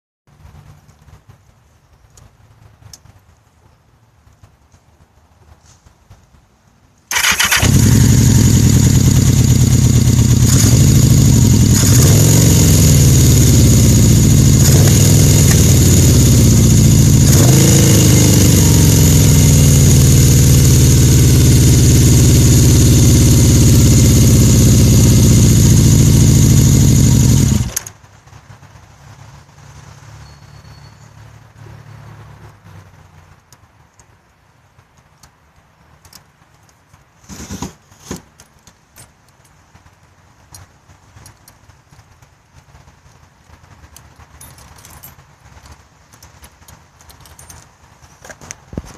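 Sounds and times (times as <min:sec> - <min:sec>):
motorcycle engine rough idle: 0:07.1 - 0:28.0.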